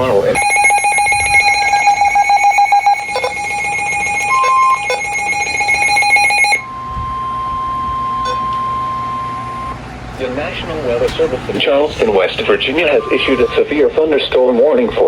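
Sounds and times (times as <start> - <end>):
steady alarm tone: 0.0 - 9.8, 11.6 - 13.8
weather alert alarm beeping: 0.0 - 9.8, 11.9 - 13.7.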